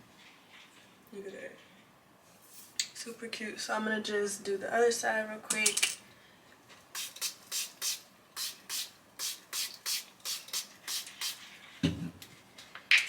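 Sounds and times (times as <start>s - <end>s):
spray bottle spritzing: 6.9s - 11.5s.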